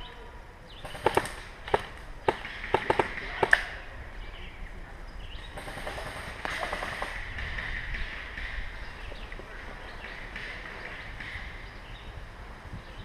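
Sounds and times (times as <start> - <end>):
airsoft gun shots: 0.8 - 3.8, 5.6 - 8.8.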